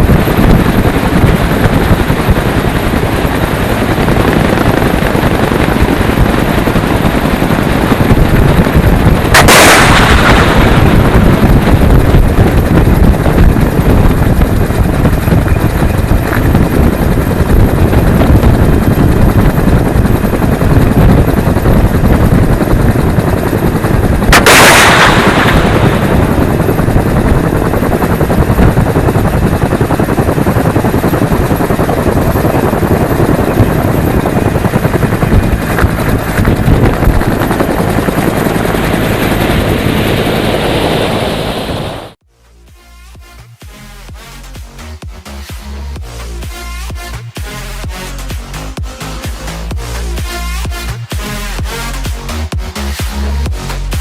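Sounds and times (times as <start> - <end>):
heavy automatic gunfire: 9.3 - 13.0, 24.3 - 27.3
sharp loud blasts: 9.3 - 14.6, 24.3 - 27.8.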